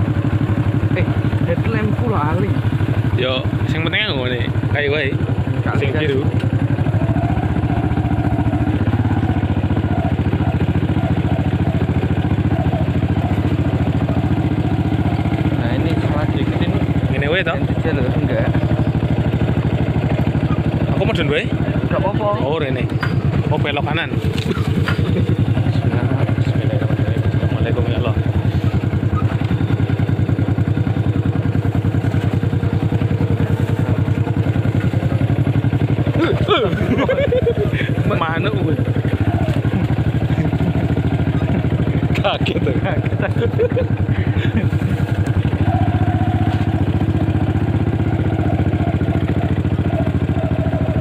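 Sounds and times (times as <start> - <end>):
motorcycle engine running: 0.0 - 51.0.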